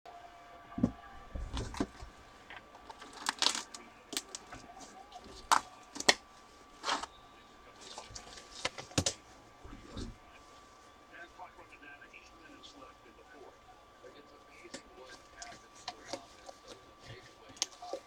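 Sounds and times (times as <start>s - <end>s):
cards and boxes being handled: 0.8s - 10.9s, 14.5s - 18.0s.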